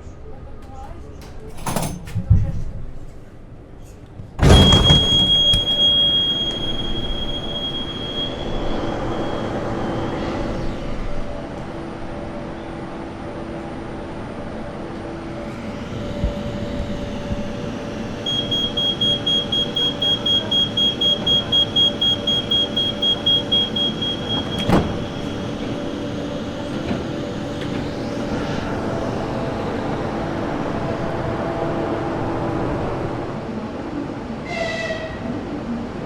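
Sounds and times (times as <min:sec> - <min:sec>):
train carriage hum: 0:00.0 - 0:36.0
train doors shutting thud: 0:04.4 - 0:09.2, 0:18.3 - 0:28.3
pulsing warning beep: 0:04.4 - 0:10.4, 0:18.3 - 0:25.7.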